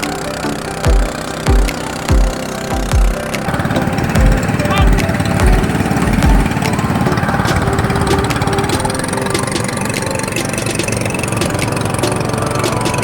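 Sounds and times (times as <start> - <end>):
boat engine chugging: 0.0 - 13.0.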